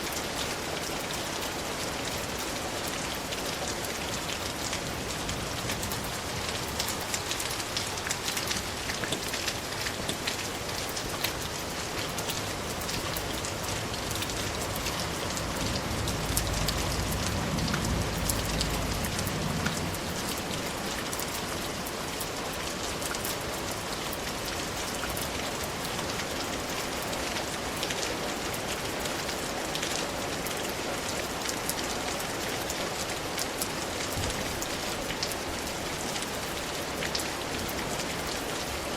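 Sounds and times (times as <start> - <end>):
rain falling: 0.0 - 38.9
raindrops ticking on a surface: 0.0 - 38.9
low rumble: 14.0 - 20.6.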